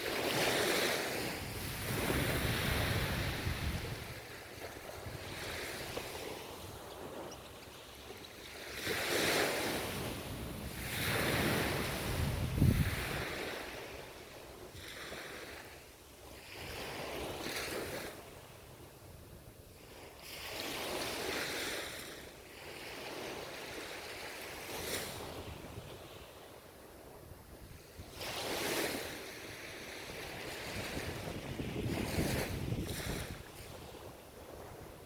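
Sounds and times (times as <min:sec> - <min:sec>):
ocean waves breaking: 0:00.0 - 0:18.2, 0:27.8 - 0:35.0.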